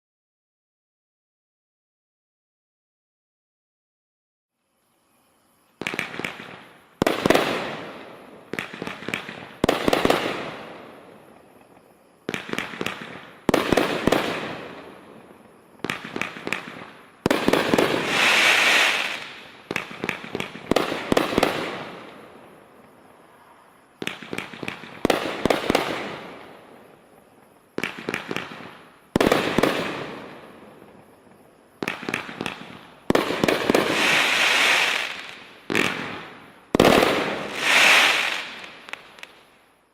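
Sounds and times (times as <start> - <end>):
firework bangs with crackling: 5.8 - 11.6, 12.2 - 22.3, 24.0 - 26.8, 27.7 - 31.2, 31.8 - 39.5.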